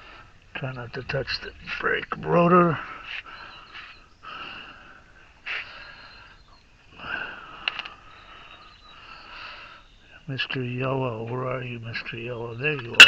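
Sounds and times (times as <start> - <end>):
person breathing heavily: 2.8 - 9.9.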